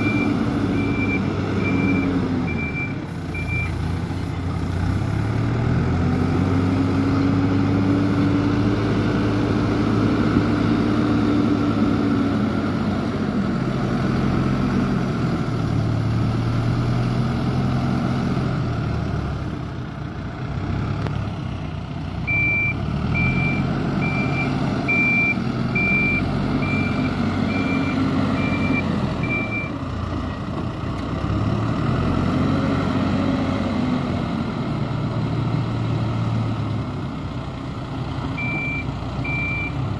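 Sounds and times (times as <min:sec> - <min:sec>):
high beeps: 0:00.0 - 0:03.8, 0:22.3 - 0:29.7, 0:38.4 - 0:39.8.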